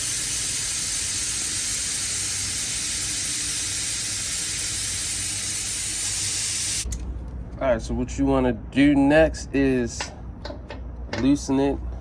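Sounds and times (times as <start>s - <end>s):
compressed air hissing: 0.0s - 6.9s.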